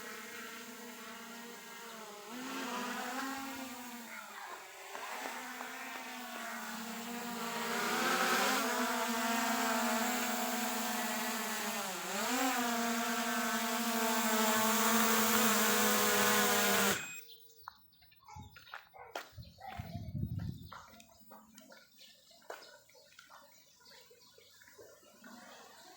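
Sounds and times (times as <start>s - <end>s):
motor hum: 0.0s - 17.2s.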